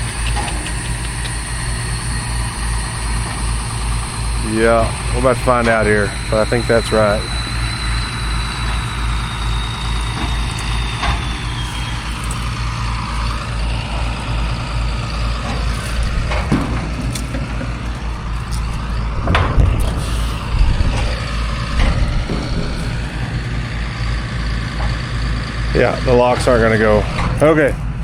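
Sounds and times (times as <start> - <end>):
tractor diesel engine running: 0.0 - 28.0
metallic knocks and clanks: 15.4 - 23.5.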